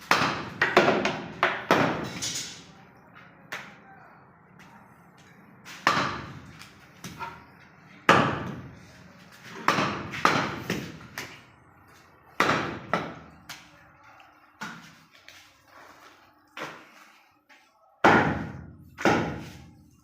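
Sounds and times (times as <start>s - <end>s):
cleaver chopping meat and bone: 0.0s - 2.0s, 5.8s - 6.4s, 8.1s - 8.6s, 9.6s - 11.3s, 12.4s - 13.3s, 18.0s - 19.4s.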